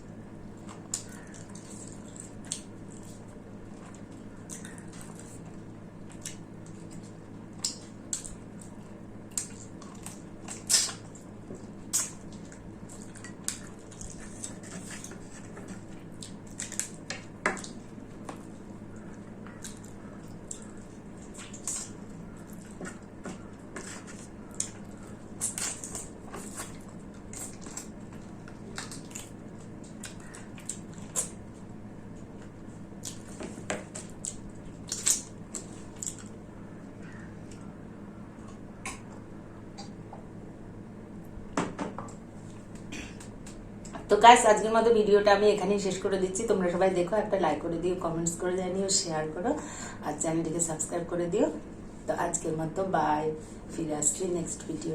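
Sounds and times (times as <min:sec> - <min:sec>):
steady low hum: 0:00.0 - 0:54.9
wet chewing and lip smacks: 0:00.8 - 0:17.0, 0:24.1 - 0:36.4.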